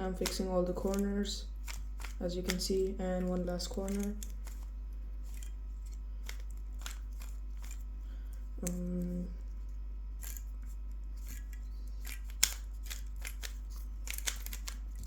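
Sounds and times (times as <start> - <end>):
puzzle cube clicking: 0.2 - 4.7, 5.3 - 7.8, 11.2 - 15.0.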